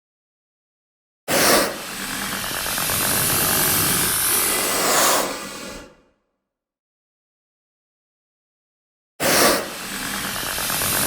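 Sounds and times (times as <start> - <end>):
creature hissing: 9.2 - 11.0.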